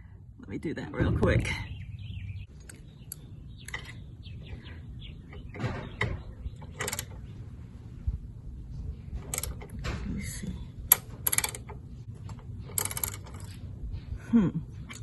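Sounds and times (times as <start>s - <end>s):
ratchet clicking: 10.9s - 11.8s.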